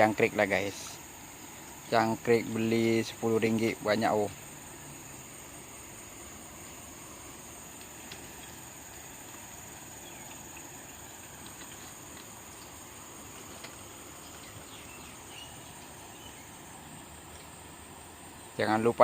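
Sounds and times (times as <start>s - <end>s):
insects trilling: 0.0s - 19.0s.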